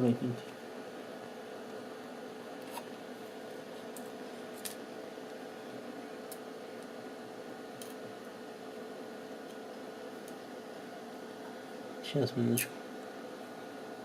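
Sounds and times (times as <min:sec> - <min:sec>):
steady background hum: 0:00.0 - 0:14.0.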